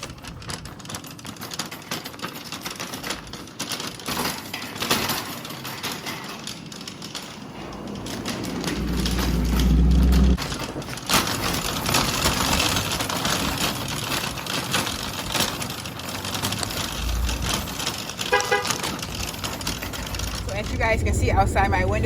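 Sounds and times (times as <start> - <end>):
road and tyre noise: 0.0 - 22.0
loud low rumble: 7.4 - 10.4, 19.8 - 22.0.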